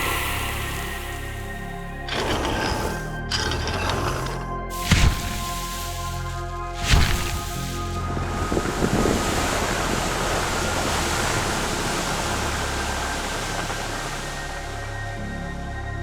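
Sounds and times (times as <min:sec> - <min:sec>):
long rushing hiss: 0:00.0 - 0:01.9
ice crackling: 0:00.0 - 0:14.9.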